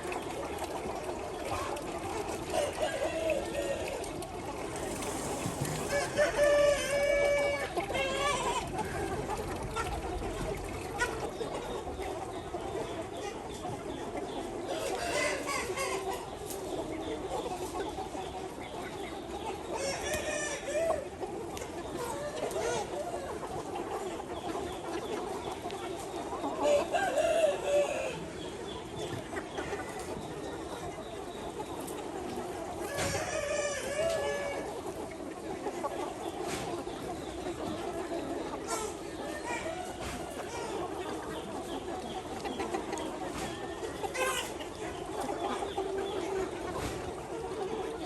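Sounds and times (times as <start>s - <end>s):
chickens clucking: 0.0s - 48.0s
rooster crowing: 5.8s - 7.6s.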